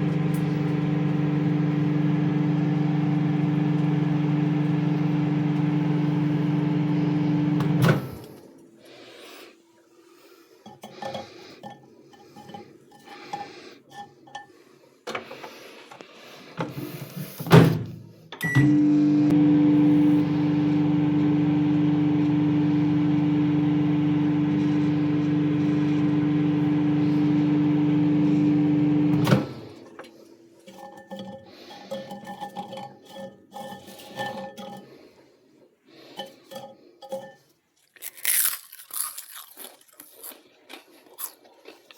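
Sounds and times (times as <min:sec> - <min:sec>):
microwave oven humming: 0:00.0 - 0:08.5, 0:18.4 - 0:29.9.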